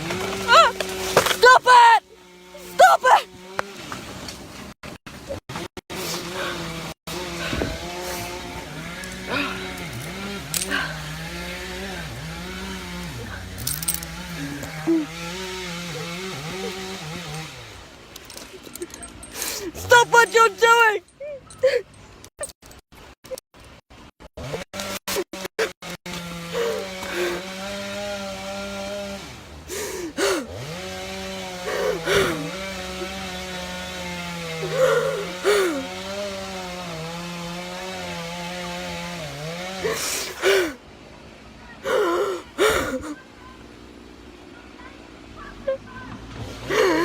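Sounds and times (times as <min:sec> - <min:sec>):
chainsaw at high revs: 0:00.0 - 0:04.7, 0:05.5 - 0:21.0, 0:24.4 - 0:40.8, 0:46.4 - 0:47.0.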